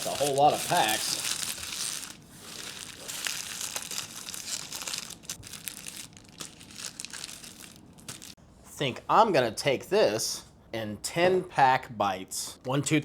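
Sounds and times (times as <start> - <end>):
card pack wrappers crinkling: 0.0 - 8.4.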